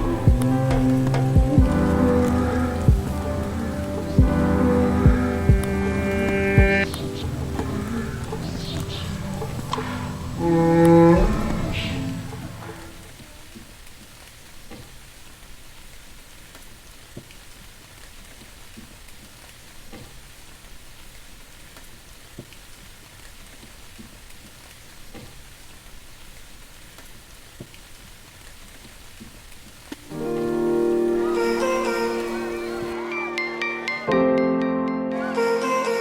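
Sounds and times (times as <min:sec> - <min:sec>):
music with sustained notes: 0:00.0 - 0:13.2, 0:30.0 - 0:36.0
soft rain-like noise: 0:00.0 - 0:33.9
faint light ticks: 0:26.4 - 0:30.1.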